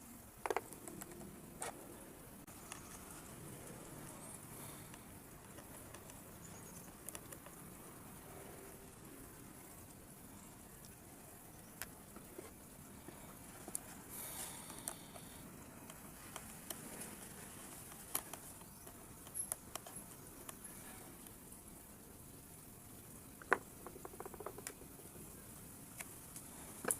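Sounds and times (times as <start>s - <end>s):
plastic parts clicking and tapping: 0.4s - 1.3s
soft rustle: 0.8s - 11.0s, 11.9s - 21.6s.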